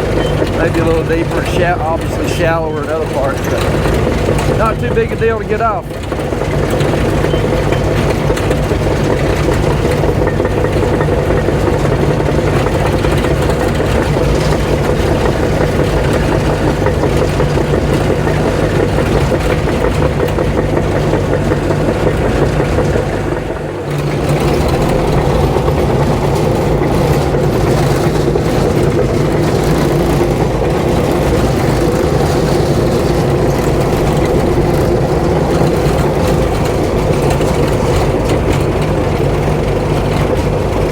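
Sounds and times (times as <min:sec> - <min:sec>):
diesel engine running: 0:00.0 - 0:40.9.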